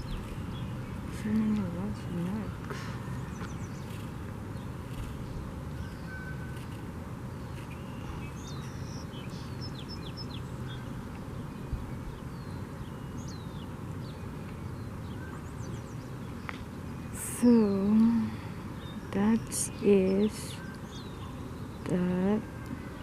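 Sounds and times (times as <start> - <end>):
low outdoor rumble: 0.0 - 23.0.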